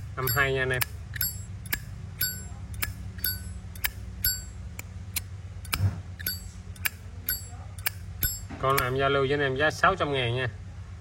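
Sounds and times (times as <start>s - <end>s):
lighter lid clicking with metallic ping: 0.3s - 8.9s.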